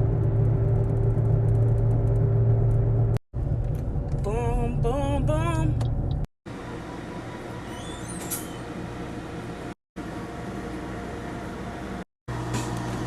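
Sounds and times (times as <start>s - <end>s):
car engine and road noise: 0.0s - 6.7s.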